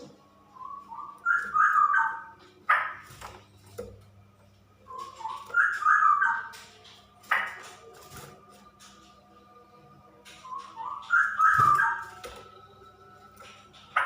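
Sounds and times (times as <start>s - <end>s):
bird whistled song: 0.5s - 3.1s, 4.8s - 7.6s, 10.3s - 14.0s.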